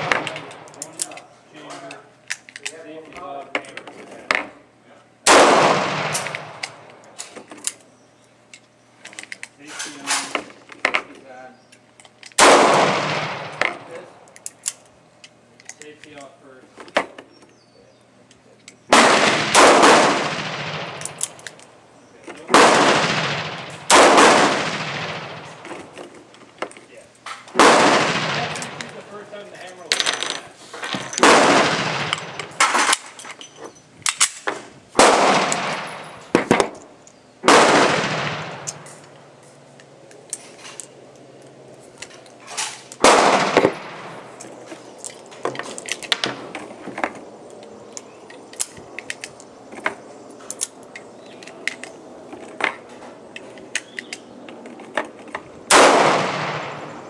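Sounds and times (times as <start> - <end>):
handgun shots: 5.3 - 7.1, 12.4 - 13.8, 18.9 - 21.4, 22.5 - 25.6, 27.5 - 28.8, 31.2 - 33.1, 35.0 - 36.8, 37.4 - 39.0, 43.0 - 44.2, 55.7 - 57.0.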